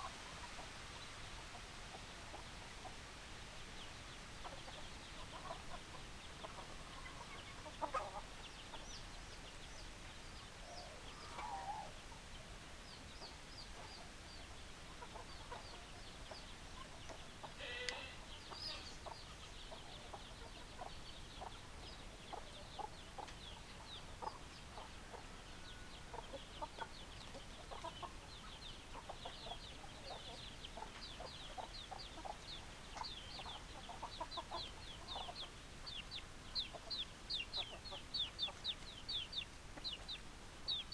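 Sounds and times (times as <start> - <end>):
chickens clucking: 1.5 - 3.0, 4.4 - 9.4, 11.1 - 12.1, 13.1 - 40.9
loud chicken call: 17.6 - 18.9.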